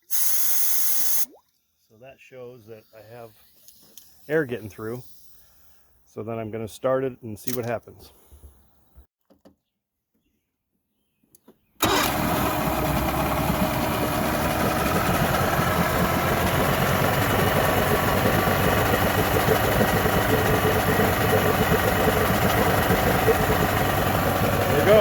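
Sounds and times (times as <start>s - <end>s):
outboard motor running: 11.8s - 25.0s.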